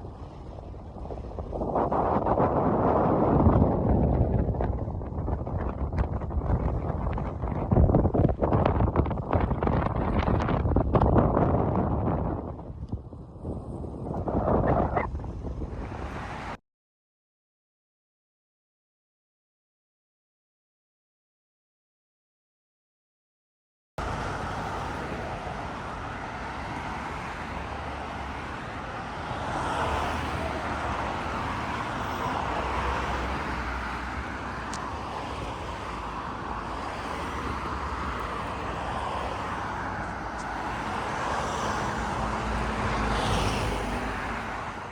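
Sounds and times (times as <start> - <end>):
cars passing: 15.4 - 16.6, 24.0 - 44.9.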